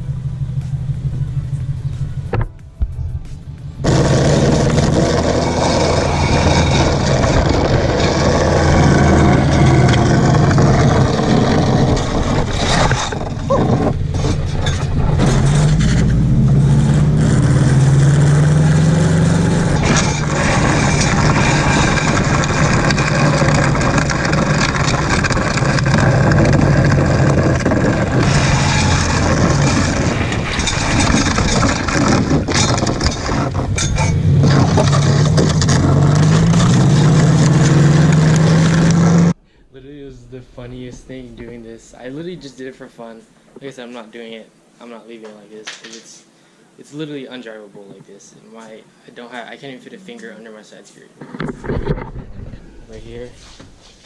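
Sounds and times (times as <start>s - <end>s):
car engine revving while driving: 3.7s - 12.6s, 13.2s - 39.4s.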